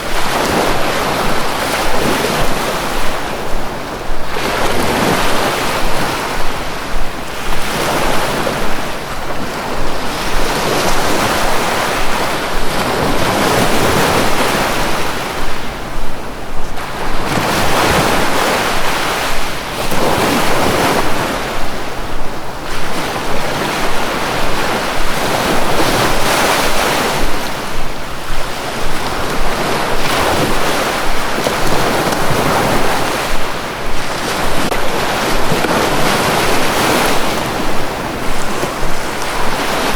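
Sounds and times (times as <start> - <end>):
sea waves breaking on shore: 0.0 - 39.9
wind on microphone: 0.0 - 39.9.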